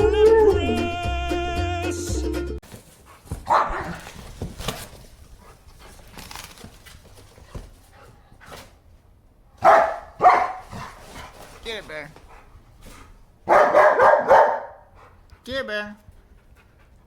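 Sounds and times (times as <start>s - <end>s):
cardboard tearing: 2.6s - 7.6s
dog barking: 3.3s - 4.2s, 9.6s - 11.0s, 13.4s - 14.9s.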